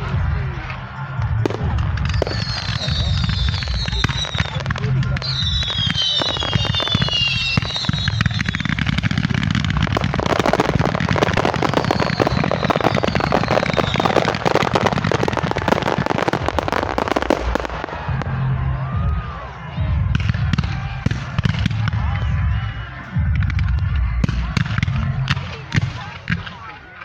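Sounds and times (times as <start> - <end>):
rumble of firework bangs: 0.0 - 27.0
crackling firework pops: 1.2 - 18.1
firework whistles falling in pitch: 2.0 - 4.6, 5.2 - 8.8, 11.2 - 17.7.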